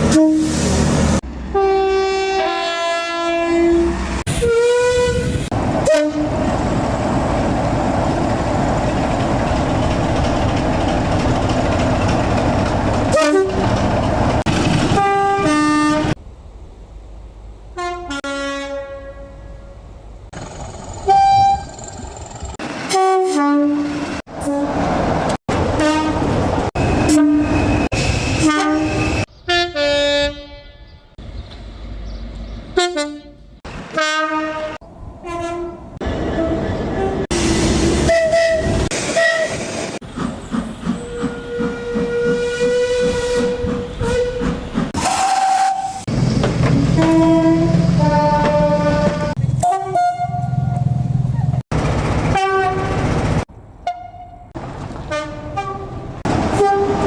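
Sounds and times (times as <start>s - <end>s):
train horns: 0.0s - 0.7s, 1.5s - 6.4s, 13.1s - 13.7s, 14.9s - 16.2s, 17.8s - 19.8s, 21.0s - 21.8s, 22.9s - 24.8s, 25.8s - 31.1s, 32.8s - 37.4s, 38.0s - 39.6s, 41.0s - 50.9s, 52.3s - 53.1s, 53.8s - 57.0s
trains running on track: 0.0s - 18.2s, 19.1s - 29.3s, 31.2s - 57.0s.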